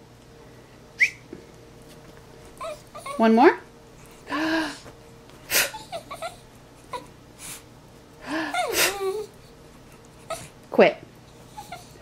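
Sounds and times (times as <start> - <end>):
dog whining: 2.6 - 3.3, 5.5 - 7.1, 8.5 - 9.5, 10.2 - 10.6, 11.3 - 12.0.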